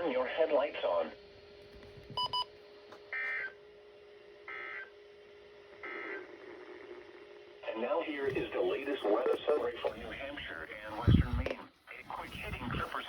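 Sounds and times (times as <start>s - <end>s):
faint steady hum: 0.0s - 13.0s
electronic beeps: 2.2s - 2.5s.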